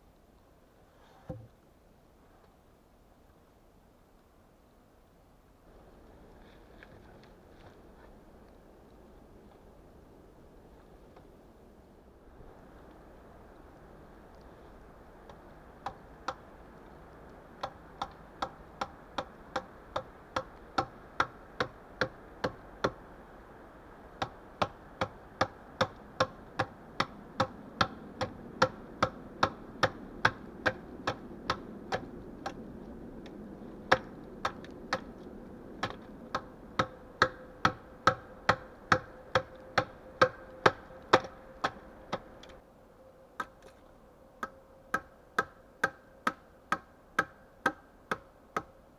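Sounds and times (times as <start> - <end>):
hand tool knocking wood: 1.3 - 1.5, 17.6 - 23.0, 33.9 - 35.1, 35.8 - 42.5.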